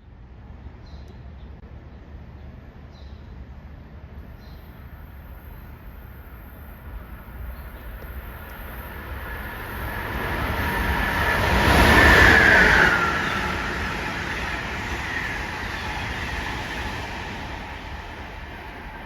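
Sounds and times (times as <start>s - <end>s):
train passing: 4.1s - 19.0s
train whining tone: 4.6s - 19.0s.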